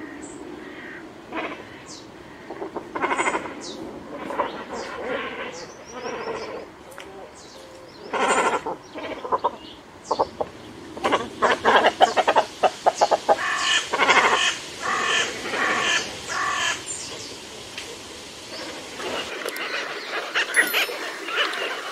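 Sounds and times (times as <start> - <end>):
faint high bird chirps: 20.6 - 21.6.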